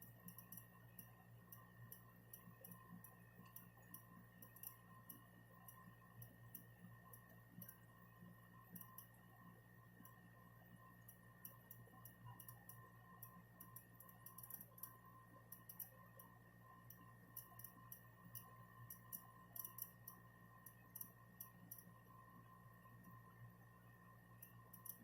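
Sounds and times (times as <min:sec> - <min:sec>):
high-pitched ticking and crackling: 0:00.0 - 0:07.9, 0:11.0 - 0:22.0, 0:24.4 - 0:25.0.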